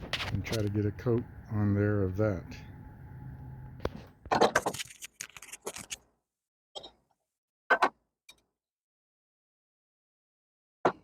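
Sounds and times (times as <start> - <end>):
objects clattering and rustling: 0.0 - 0.8, 3.8 - 6.0.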